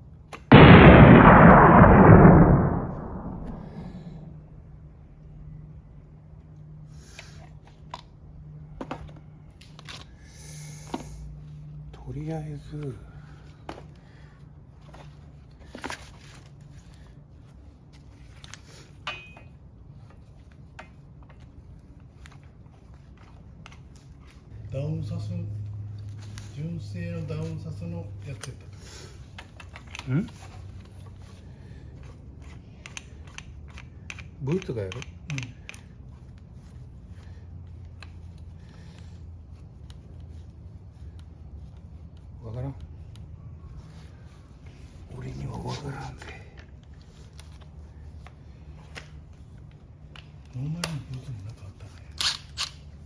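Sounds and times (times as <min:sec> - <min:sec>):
low hum: 0:00.5 - 0:04.8
faint clicks of parts handled: 0:08.8 - 0:10.2, 0:17.9 - 0:24.5, 0:32.0 - 0:39.1, 0:46.2 - 0:53.0.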